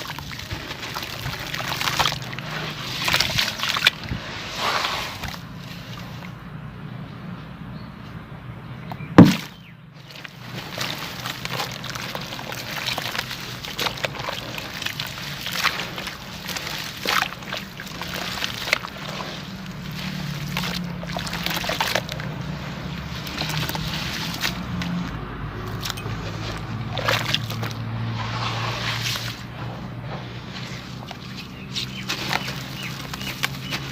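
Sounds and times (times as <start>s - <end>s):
cement chunks crumbling and crackling: 0.0s - 5.5s, 9.2s - 22.4s, 30.6s - 33.9s
water sloshing: 0.0s - 6.5s, 8.9s - 33.9s.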